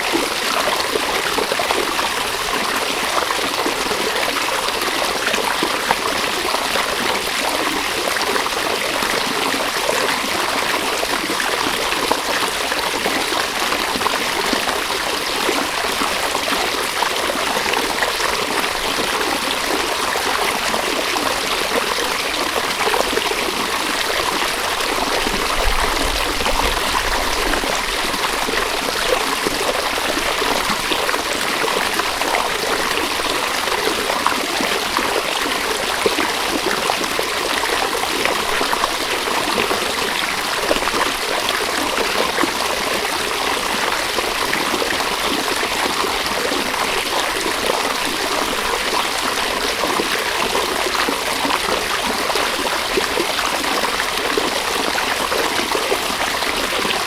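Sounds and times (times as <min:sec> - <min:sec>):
river rushing over stones: 0:21.4 - 0:34.4
faint low rumble: 0:24.8 - 0:29.6.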